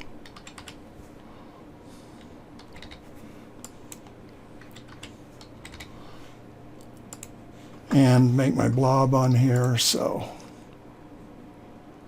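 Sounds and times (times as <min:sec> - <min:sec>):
computer keyboard keystrokes: 0:00.0 - 0:00.8, 0:02.2 - 0:05.9, 0:06.8 - 0:07.4
faint low hum: 0:00.0 - 0:12.0.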